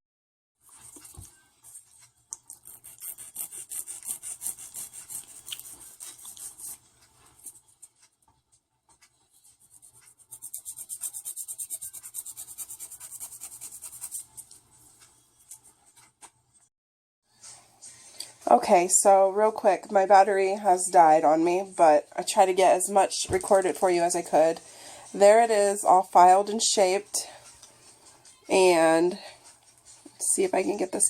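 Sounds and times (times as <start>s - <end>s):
nail file rasping: 2.4s - 6.8s, 9.6s - 14.4s.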